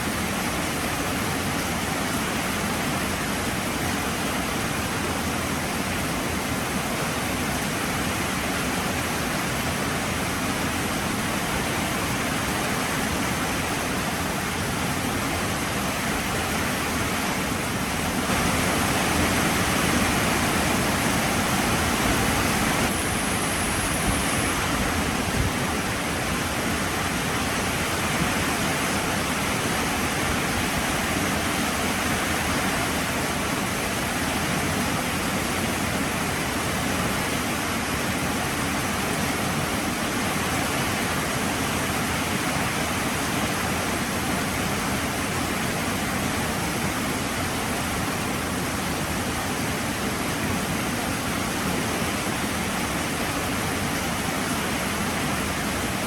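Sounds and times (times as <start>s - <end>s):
heavy rain falling: 18.1s - 33.4s.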